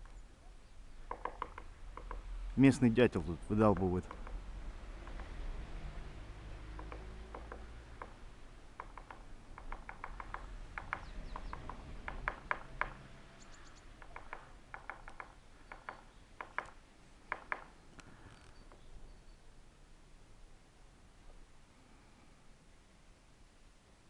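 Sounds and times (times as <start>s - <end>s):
woodpecker pecking at a pole: 1.0s - 2.3s, 3.6s - 5.5s, 6.6s - 18.9s.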